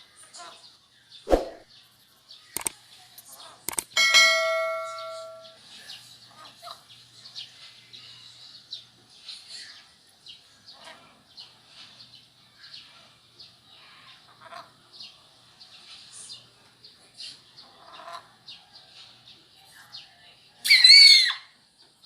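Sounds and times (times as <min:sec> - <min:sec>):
bell ringing: 0:04.0 - 0:05.6
chickens clucking softly: 0:13.8 - 0:15.0, 0:17.2 - 0:19.3.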